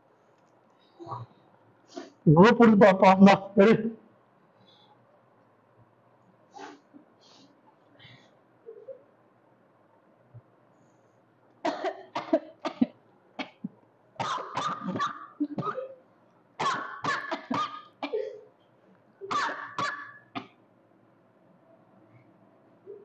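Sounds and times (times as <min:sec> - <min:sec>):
person coughing: 0:11.7 - 0:13.6, 0:14.2 - 0:16.0, 0:16.6 - 0:18.5, 0:19.2 - 0:20.6.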